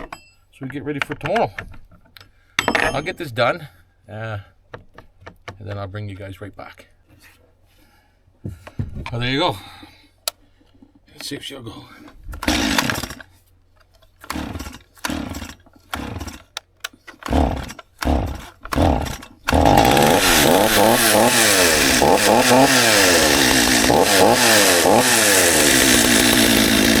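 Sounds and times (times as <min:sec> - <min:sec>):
starter cord pulls: 0:12.1 - 0:27.0
chainsaw revving: 0:12.4 - 0:13.3, 0:14.2 - 0:16.6, 0:17.2 - 0:27.0.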